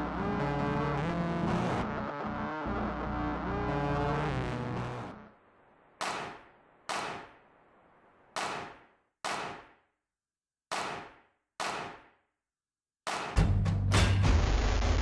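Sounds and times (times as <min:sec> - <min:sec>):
sharp percussive hits: 0:06.0 - 0:07.4, 0:08.4 - 0:09.8, 0:10.7 - 0:12.2, 0:13.1 - 0:14.3.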